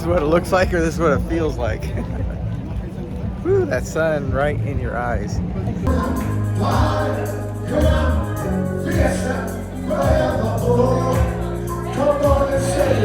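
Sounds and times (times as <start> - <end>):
sustained bass notes: 5.4 - 13.0
choir-like singing: 5.8 - 13.0.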